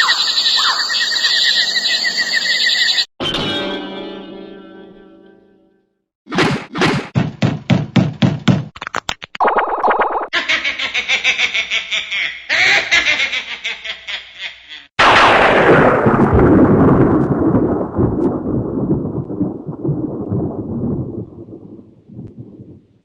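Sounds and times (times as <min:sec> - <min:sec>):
loud rumbling boom: 0:15.0 - 0:22.8.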